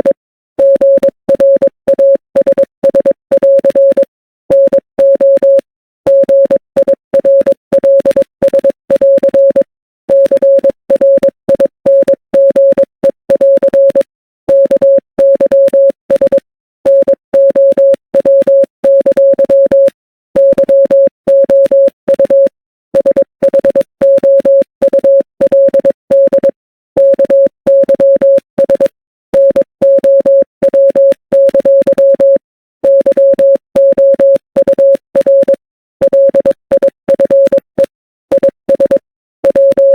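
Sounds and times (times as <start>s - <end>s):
morse code beeps: 0.0s - 39.9s.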